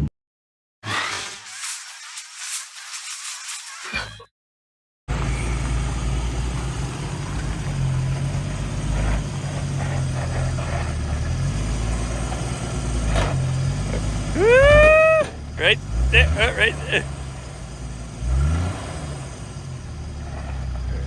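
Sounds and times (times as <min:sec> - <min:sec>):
car engine low rumble: 0:05.1 - 0:21.0
rising voice-like call: 0:14.4 - 0:17.1.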